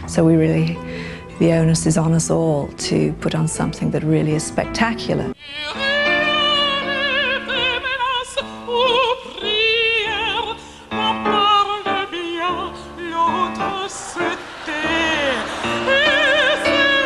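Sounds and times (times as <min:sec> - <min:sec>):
operatic singing with vibrato: 0:05.4 - 0:17.0
sustained accompaniment: 0:11.9 - 0:17.0.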